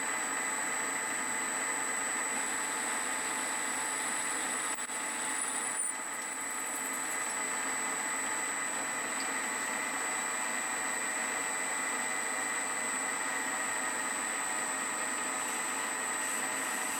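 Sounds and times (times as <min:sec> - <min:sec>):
metal lathe motor whine: 0:00.0 - 0:16.9
faint high squeal: 0:02.5 - 0:07.4.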